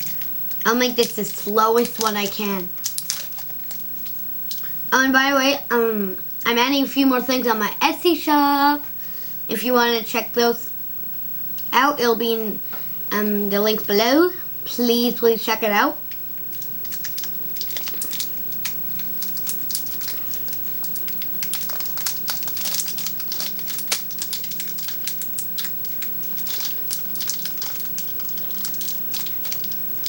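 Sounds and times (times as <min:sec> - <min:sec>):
wrapper crinkling and crackling: 0:00.0 - 0:04.9, 0:16.1 - 0:30.0.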